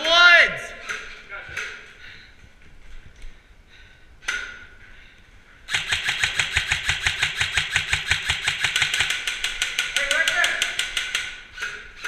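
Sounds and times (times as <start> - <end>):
airsoft gun full-auto firing: 5.7 - 11.4.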